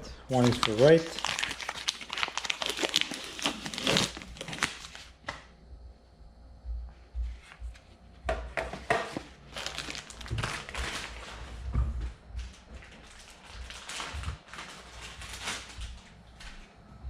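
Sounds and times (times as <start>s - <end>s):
packaging rustling and crinkling: 0.3s - 5.2s, 8.8s - 11.6s, 12.4s - 16.2s.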